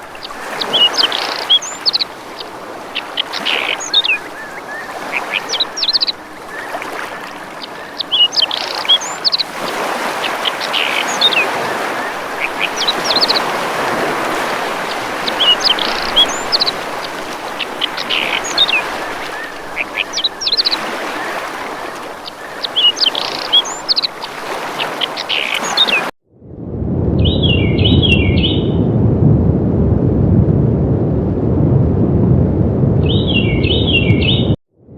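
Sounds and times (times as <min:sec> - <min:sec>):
birds chirping and whistling: 0:00.0 - 0:26.1, 0:27.2 - 0:28.8, 0:33.0 - 0:34.6
rushing water: 0:00.0 - 0:26.2.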